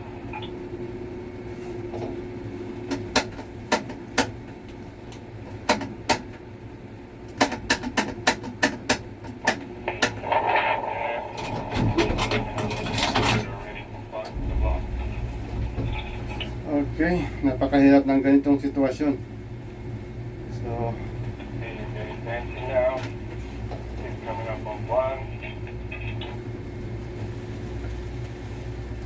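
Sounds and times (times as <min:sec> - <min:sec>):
crane machinery hum: 0:00.0 - 0:29.0
sharp clicks and knocks: 0:07.3 - 0:10.2.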